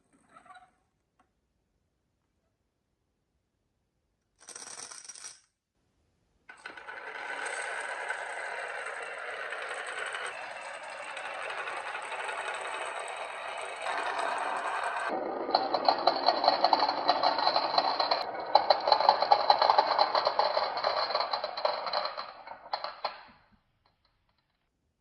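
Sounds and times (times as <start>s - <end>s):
marbles rattling down a run: 6.5s - 23.2s.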